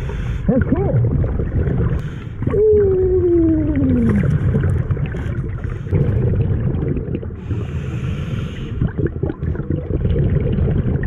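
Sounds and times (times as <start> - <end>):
muffled voice underwater: 0.4 - 1.5, 2.4 - 4.6.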